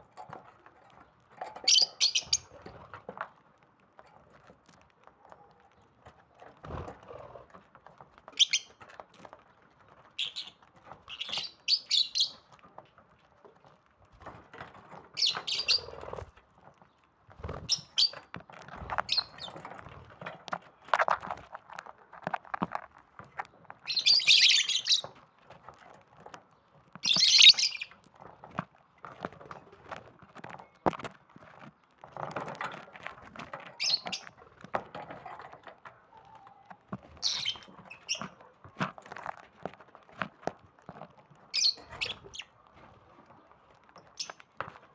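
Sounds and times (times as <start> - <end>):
lovebirds chirping: 1.6 - 2.5, 8.4 - 8.8, 10.2 - 12.5, 15.2 - 16.0, 17.6 - 18.2, 19.0 - 19.6, 23.8 - 25.2, 27.0 - 27.9, 33.8 - 34.4, 36.1 - 38.4, 41.5 - 42.6, 44.0 - 44.4
soft clicks and rustling: 18.1 - 44.9.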